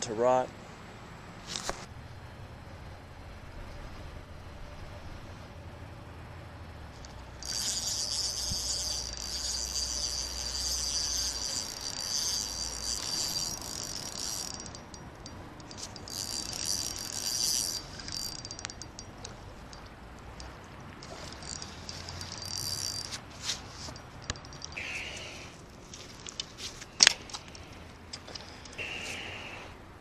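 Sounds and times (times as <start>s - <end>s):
fishing reel whirring: 7.0s - 23.2s, 24.2s - 25.6s, 28.2s - 29.6s.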